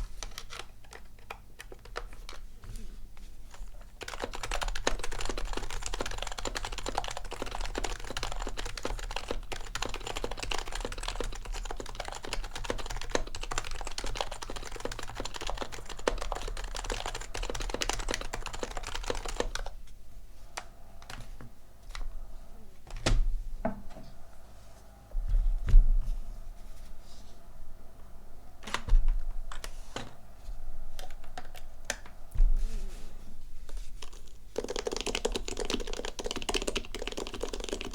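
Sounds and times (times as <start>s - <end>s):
keyboard typing: 0.0s - 2.5s, 3.5s - 19.8s, 34.0s - 37.9s.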